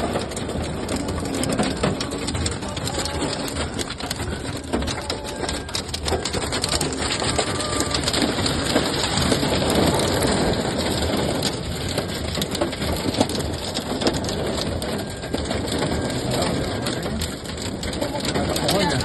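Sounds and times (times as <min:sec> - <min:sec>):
small crackling ticks: 0:00.0 - 0:19.0
strong storm wind rushing: 0:05.4 - 0:18.3.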